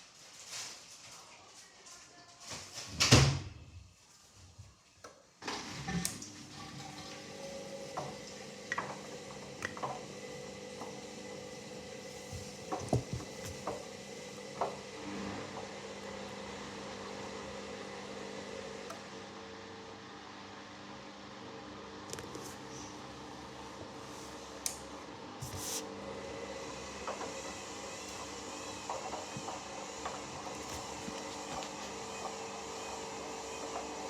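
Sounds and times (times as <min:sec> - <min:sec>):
washing machine drum motor hum: 0:05.7 - 0:19.8, 0:25.2 - 0:34.0
washing machine thump: 0:12.4 - 0:13.7
laundry tumbling knocks: 0:12.4 - 0:13.8.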